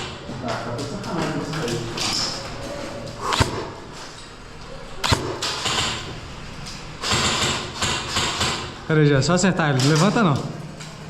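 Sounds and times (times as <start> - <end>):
airsoft rifle shots: 3.2 - 3.8, 5.0 - 6.2, 7.0 - 8.8.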